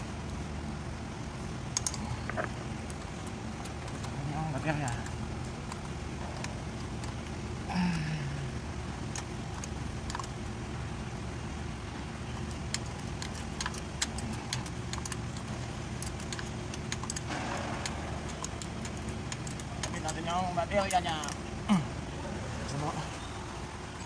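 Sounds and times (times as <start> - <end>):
low background hum: 0.0 - 24.0
metallic clicks and key jangling: 1.7 - 7.4, 12.4 - 21.4.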